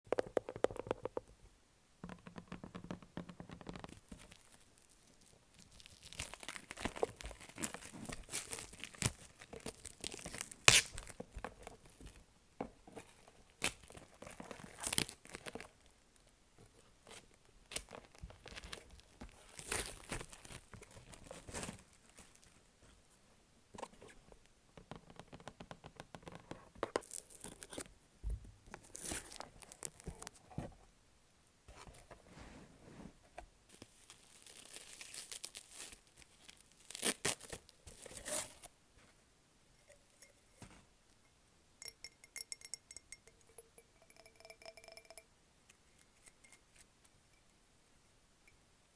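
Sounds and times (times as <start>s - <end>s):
packaging wrap tearing and crinkling: 4.4s - 11.2s, 34.0s - 38.7s.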